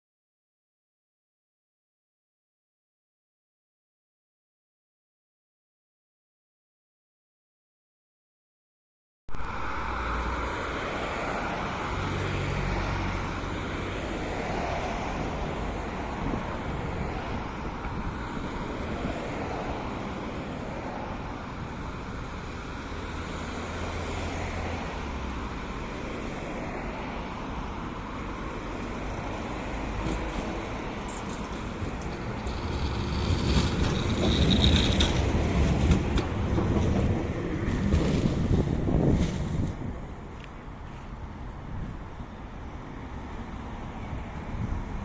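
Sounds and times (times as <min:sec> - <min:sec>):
city street traffic: 0:09.3 - 0:45.0.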